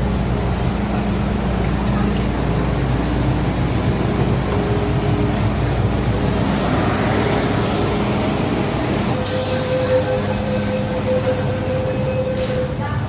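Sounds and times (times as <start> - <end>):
train motors rumbling: 0.0 - 13.0.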